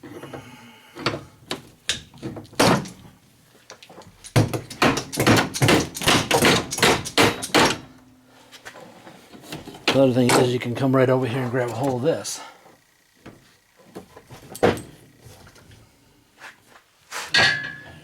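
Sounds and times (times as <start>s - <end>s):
knocks and bangs on refrigerator: 2.6s - 2.9s, 4.4s - 7.8s.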